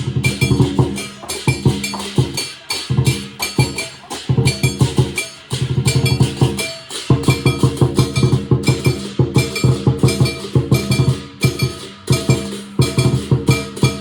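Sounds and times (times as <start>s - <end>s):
clashing cymbals: 0.0s - 14.0s
drum beaten in rapid strokes: 0.0s - 14.0s.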